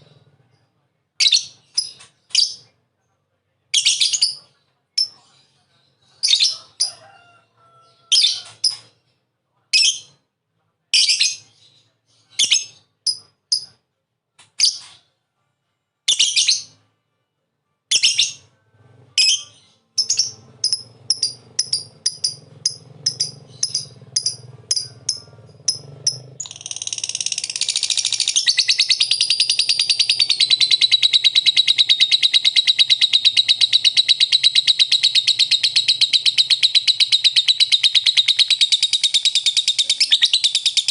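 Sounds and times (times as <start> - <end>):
lovebird chirping and trilling: 1.2 - 2.7, 3.8 - 4.4, 8.1 - 8.9, 11.0 - 13.7, 16.1 - 16.8, 17.9 - 18.5, 19.2 - 40.9.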